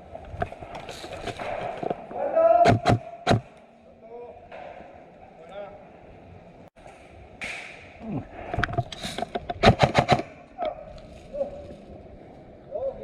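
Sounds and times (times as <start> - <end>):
airsoft gun shots: 9.6 - 10.4.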